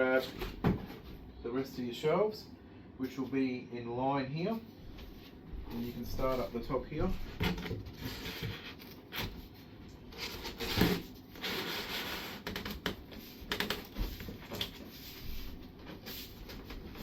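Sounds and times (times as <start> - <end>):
cardboard rubbing and scraping: 7.2 - 9.5, 10.1 - 17.0.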